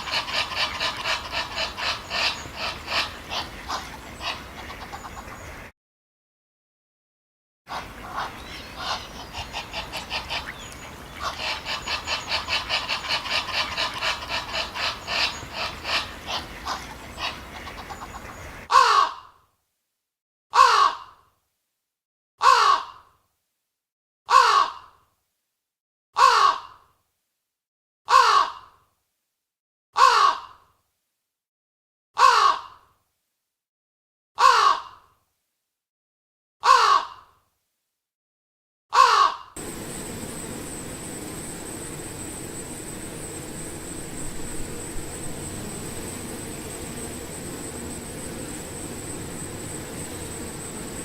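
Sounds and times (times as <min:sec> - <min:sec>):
steady hiss: 0:00.0 - 0:04.9, 0:07.7 - 0:18.7, 0:39.6 - 0:51.0
falling animal call: 0:07.7 - 0:19.2.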